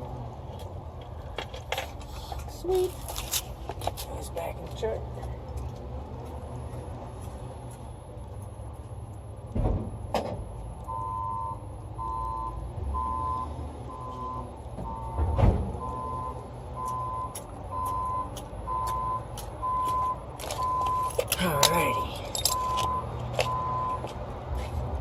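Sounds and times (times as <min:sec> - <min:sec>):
low steady rumble: 0:00.0 - 0:23.0
electronic warning beeps: 0:10.6 - 0:24.1.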